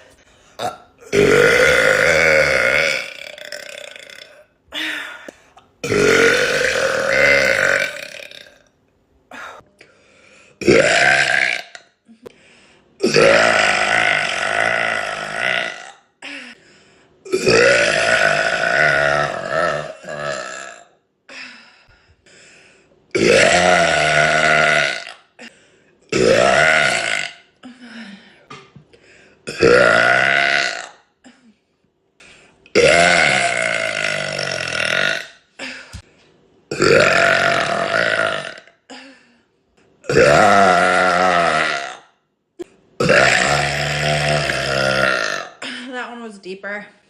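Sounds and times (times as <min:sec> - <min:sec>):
woman burping loudly: 0:00.6 - 0:05.2, 0:05.8 - 0:08.7, 0:10.6 - 0:12.3, 0:13.0 - 0:16.5, 0:17.3 - 0:21.0, 0:23.1 - 0:25.5, 0:26.1 - 0:28.6, 0:29.4 - 0:31.6, 0:32.7 - 0:36.0, 0:36.7 - 0:39.0, 0:40.0 - 0:46.0.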